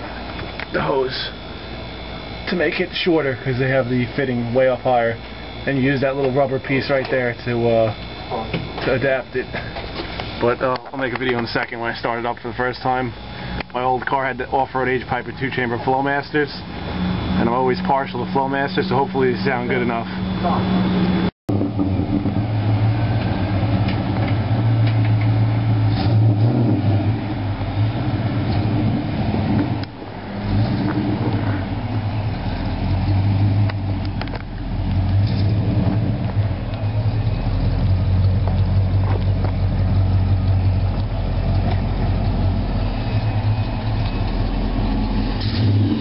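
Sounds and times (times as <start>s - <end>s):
deep car exhaust note: 14.3s - 46.0s.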